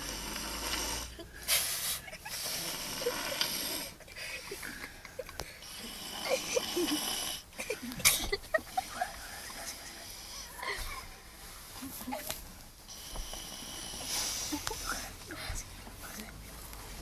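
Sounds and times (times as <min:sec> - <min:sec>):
man snoring: 0:00.0 - 0:04.0, 0:05.6 - 0:07.6, 0:12.9 - 0:14.4.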